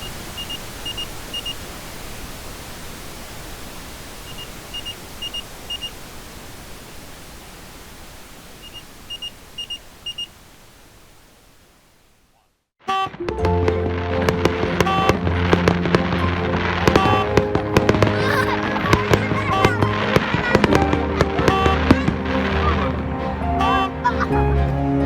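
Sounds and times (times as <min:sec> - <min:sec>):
electronic alarm beeping: 0:00.0 - 0:01.6, 0:04.3 - 0:05.9, 0:08.6 - 0:10.3
steady pink noise: 0:00.0 - 0:12.5, 0:13.8 - 0:24.6.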